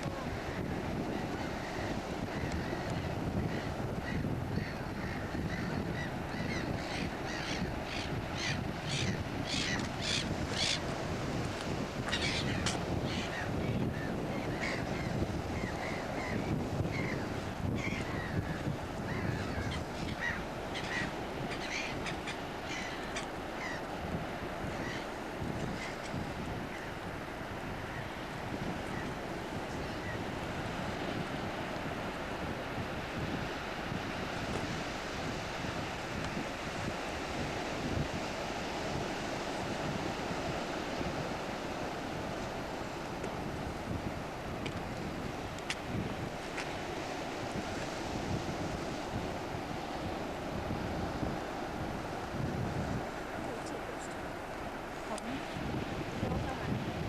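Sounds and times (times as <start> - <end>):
gulls calling: 0.0 - 11.0, 12.0 - 27.1, 28.8 - 30.4
wind rumble on microphone: 0.0 - 57.0.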